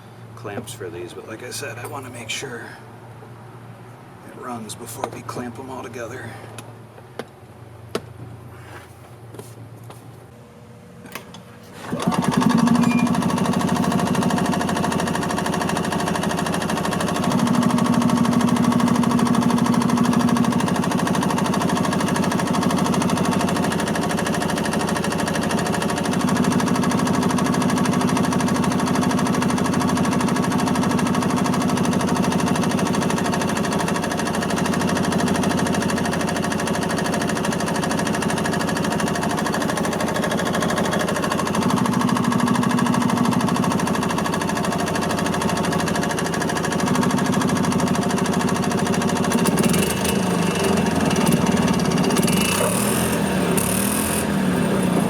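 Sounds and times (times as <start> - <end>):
golf cart engine running: 11.1 - 55.0.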